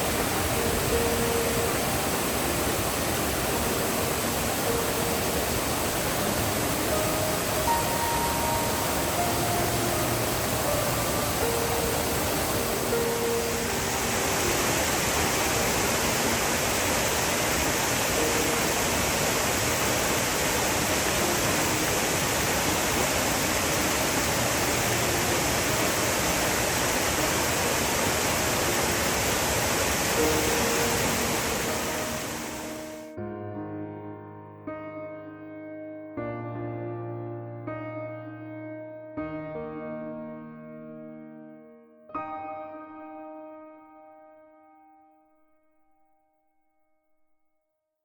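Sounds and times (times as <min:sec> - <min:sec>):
waterfall rushing: 0:00.0 - 0:33.1
soft background music: 0:00.0 - 0:46.7.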